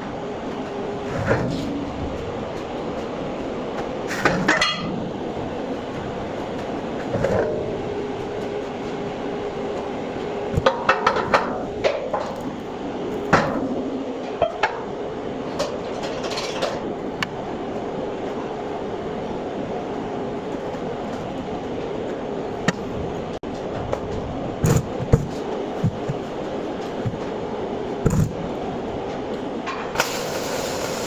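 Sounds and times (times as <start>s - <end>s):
metal clanks and knocks: 4.1s - 5.0s, 15.6s - 16.9s
welding hum: 16.9s - 31.0s.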